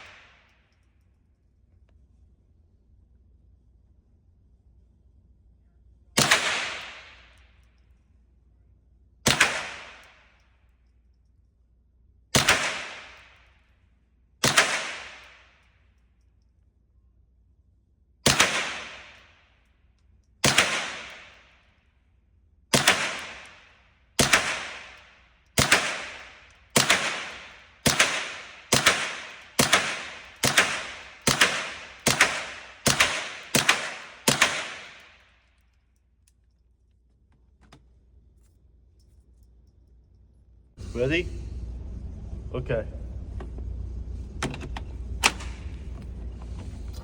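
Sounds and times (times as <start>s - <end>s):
gunshots with echo: 6.2s - 7.3s, 9.3s - 10.3s, 12.4s - 13.5s, 14.4s - 15.5s, 18.3s - 19.3s, 20.4s - 21.5s, 22.7s - 35.2s.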